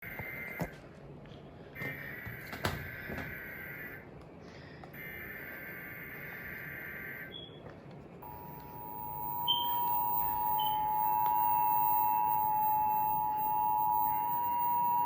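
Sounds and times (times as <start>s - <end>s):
two-note attention tone: 8.2s - 15.0s
warbling digital data tones: 8.2s - 15.0s.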